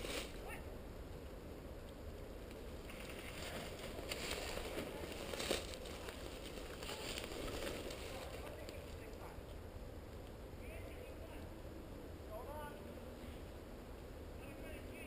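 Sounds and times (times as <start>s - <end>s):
steady low rumble: 0.0s - 15.0s
footsteps crunching and rustling: 2.9s - 8.9s.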